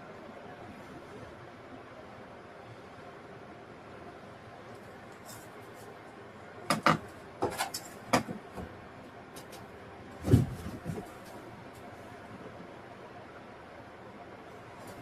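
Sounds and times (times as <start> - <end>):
tools and wood knocking: 6.7 - 8.4.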